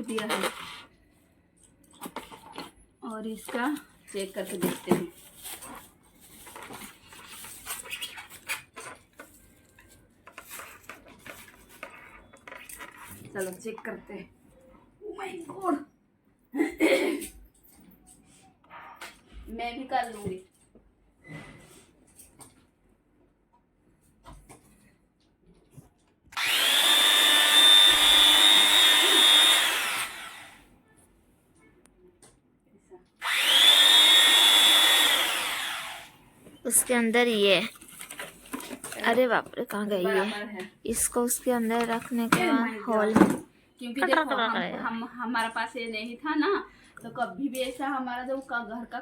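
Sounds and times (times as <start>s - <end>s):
electric drill whining: 26.4s - 30.7s, 33.2s - 36.2s
plastic and metal parts clattering: 37.7s - 39.2s.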